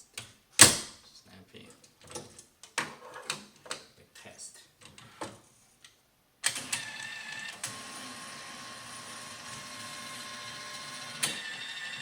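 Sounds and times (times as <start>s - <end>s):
curtain motor whine: 6.6s - 12.0s.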